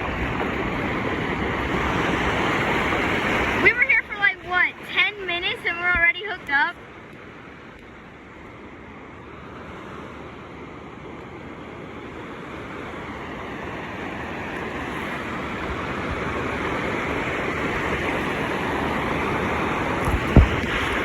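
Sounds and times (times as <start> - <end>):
surf washing on a beach: 0.0 - 21.0
low thump: 20.0 - 20.8.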